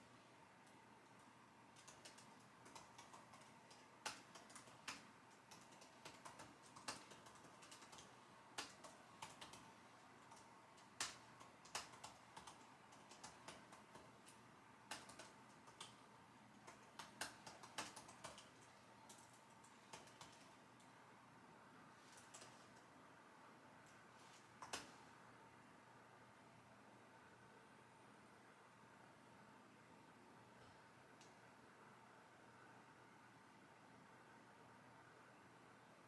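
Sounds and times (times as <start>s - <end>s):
typing on computer keyboard: 0.6s - 20.9s, 22.1s - 22.9s, 23.9s - 25.0s.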